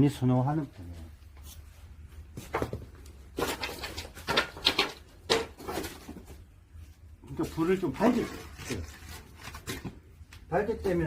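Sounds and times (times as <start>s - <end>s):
kiln cracks and knocks: 2.5s - 6.4s.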